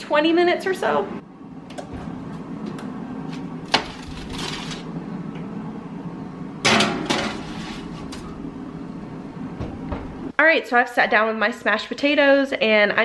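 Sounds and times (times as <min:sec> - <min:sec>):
low hum: 0:01.1 - 0:10.4
baking tray scrape: 0:03.3 - 0:04.9, 0:06.9 - 0:08.3
oven door clunking shut: 0:06.6 - 0:08.3, 0:09.5 - 0:10.3.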